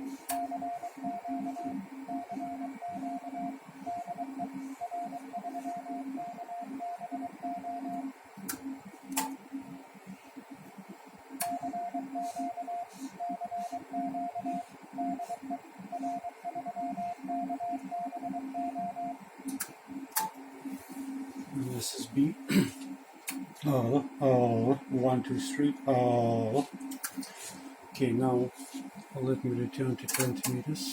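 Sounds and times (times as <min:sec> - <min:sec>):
steady low hum: 0:00.0 - 0:30.9
morse code beeping: 0:00.3 - 0:08.0, 0:11.4 - 0:19.2.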